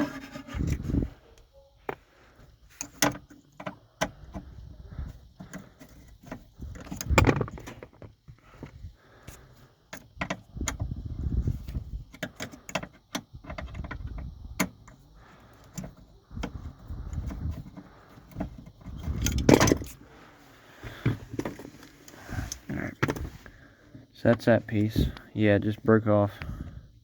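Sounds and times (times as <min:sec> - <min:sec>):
small metal rattles and knocks: 0:02.7 - 0:11.0, 0:11.6 - 0:20.1.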